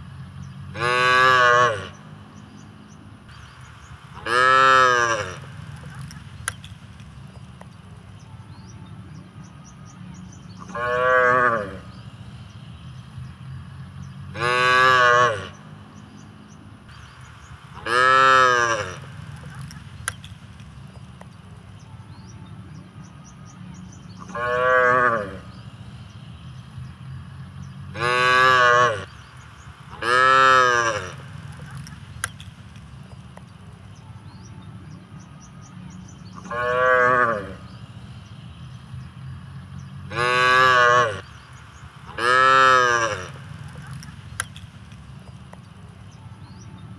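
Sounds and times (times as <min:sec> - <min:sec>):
cow mooing: 0:00.7 - 0:02.0, 0:04.2 - 0:05.5, 0:10.7 - 0:11.9, 0:14.3 - 0:15.6, 0:17.8 - 0:19.1, 0:24.3 - 0:25.5, 0:27.9 - 0:29.1, 0:29.9 - 0:31.3, 0:36.4 - 0:37.7, 0:40.1 - 0:41.3, 0:42.1 - 0:43.9.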